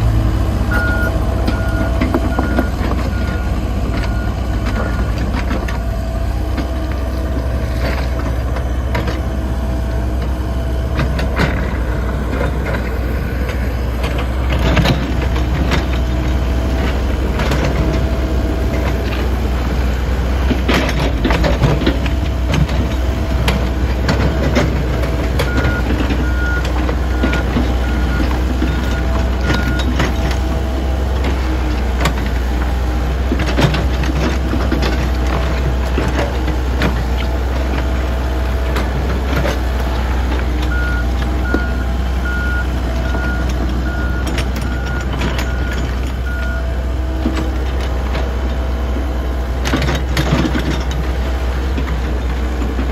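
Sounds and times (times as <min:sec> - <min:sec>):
diesel excavator engine under load: 0:00.0 - 0:52.9
reversing alarm beeping: 0:00.6 - 0:05.2, 0:25.4 - 0:30.0, 0:40.7 - 0:46.8.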